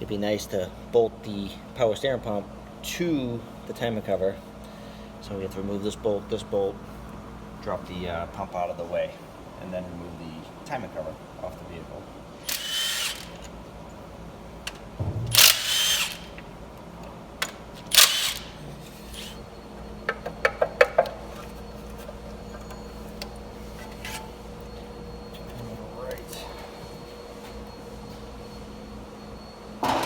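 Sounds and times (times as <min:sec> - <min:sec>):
power wrench spinning bolt: 0:12.4 - 0:13.5, 0:15.3 - 0:16.4, 0:17.9 - 0:18.6.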